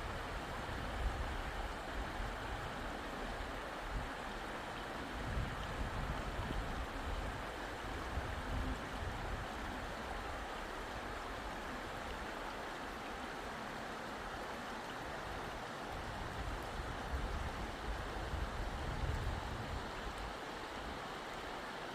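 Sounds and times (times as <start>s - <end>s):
flowing water rushing: 0.0s - 21.9s.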